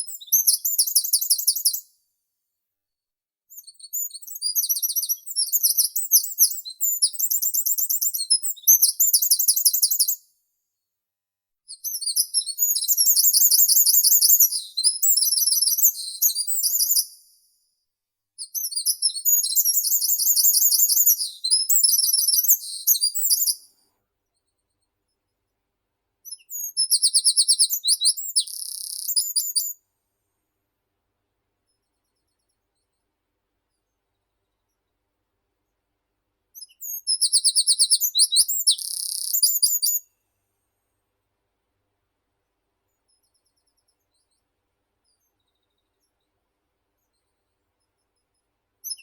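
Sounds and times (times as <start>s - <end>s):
songbird trilling: 36.8s - 40.0s.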